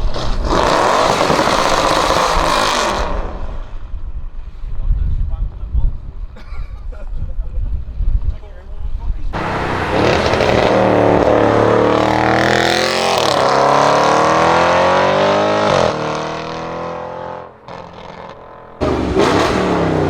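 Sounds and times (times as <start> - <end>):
car engine accelerating: 9.4 - 20.0.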